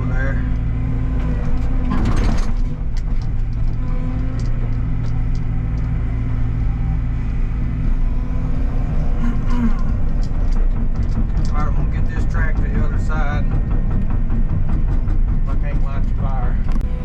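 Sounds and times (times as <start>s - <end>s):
excavator diesel engine: 0.0s - 17.0s
sharp clicks and clanks: 0.2s - 6.0s, 9.5s - 16.9s.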